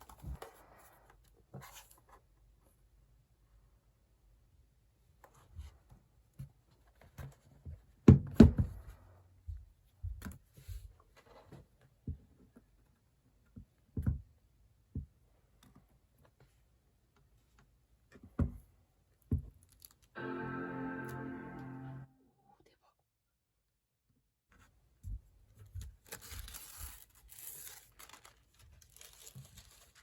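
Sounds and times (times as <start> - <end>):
laptop and packaging handled: 0.0 - 2.0, 25.5 - 30.0.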